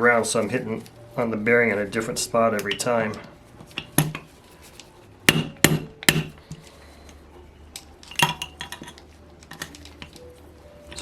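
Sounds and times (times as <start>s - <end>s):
metal-on-metal tapping: 2.6s - 4.3s, 5.3s - 6.4s.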